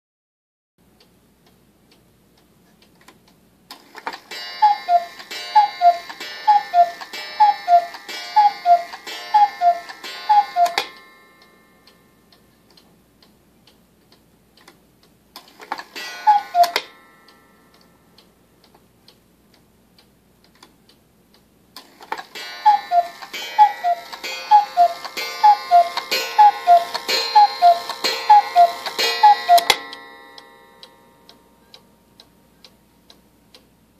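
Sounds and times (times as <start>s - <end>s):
clock ticking: 0.8s - 33.9s
cuckoo clock calling: 3.8s - 12.5s, 15.5s - 18.4s, 21.8s - 33.7s
metallic ringing: 22.4s - 32.2s.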